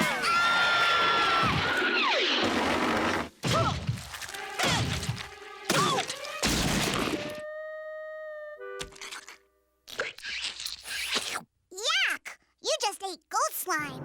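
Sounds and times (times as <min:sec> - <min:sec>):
cartoon crashes and thuds: 0:04.6 - 0:07.4.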